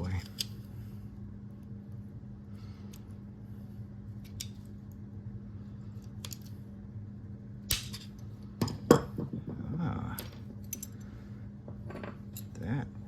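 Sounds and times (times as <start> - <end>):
steady low hum: 0.0 - 13.0
metal parts clicking and clinking: 10.1 - 11.0, 11.9 - 12.6.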